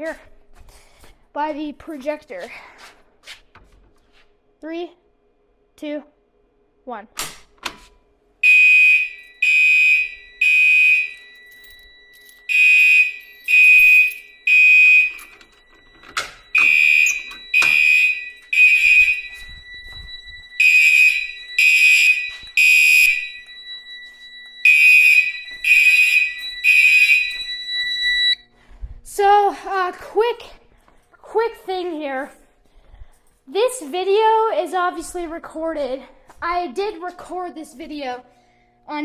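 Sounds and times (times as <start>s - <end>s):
fire alarm horn blasts: 8.4s - 28.5s
steady high tone: 8.4s - 28.5s.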